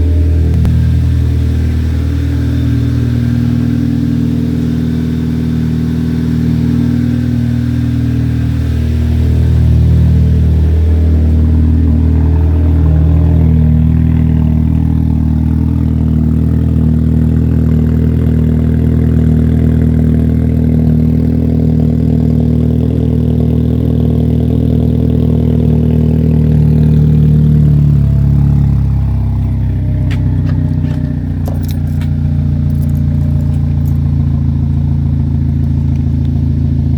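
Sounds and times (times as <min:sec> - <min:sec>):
car engine idling: 0:00.0 - 0:36.9.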